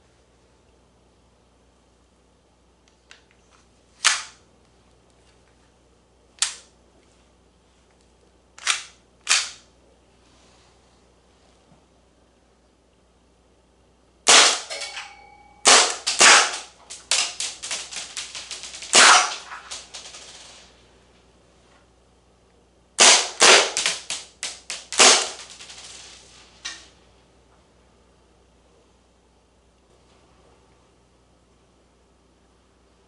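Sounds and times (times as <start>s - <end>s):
airsoft pistol shots: 14.3s - 14.9s, 15.6s - 20.1s, 23.0s - 25.6s.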